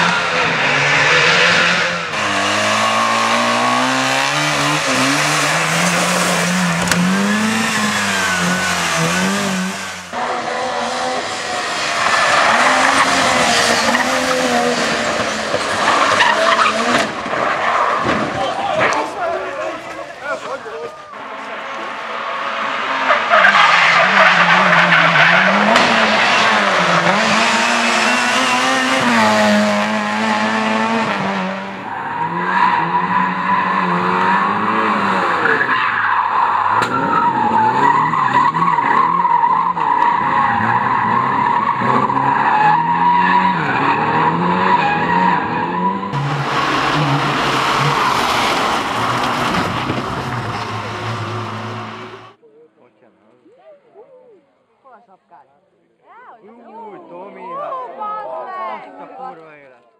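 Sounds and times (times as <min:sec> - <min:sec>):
race car engines revving: 0:00.0 - 0:52.4
tyres squealing and skidding: 0:00.0 - 0:52.4
heavy rushing noise: 0:46.1 - 0:52.4.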